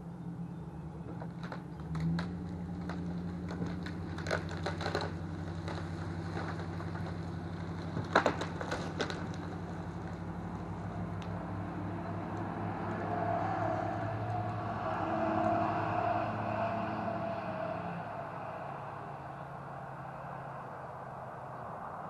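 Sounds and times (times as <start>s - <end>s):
engine running at low speed: 0.0s - 22.0s
sharp cracking and snapping: 1.1s - 13.0s.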